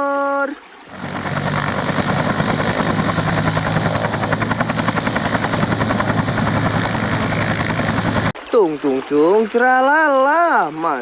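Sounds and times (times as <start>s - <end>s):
helicopter rotor blades chopping: 0.9s - 8.4s
low engine hum: 0.9s - 8.4s.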